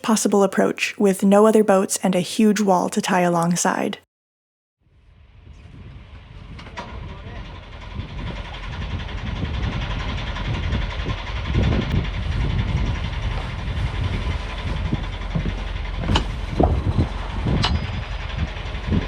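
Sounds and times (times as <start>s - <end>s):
barge engine running: 5.2s - 19.0s.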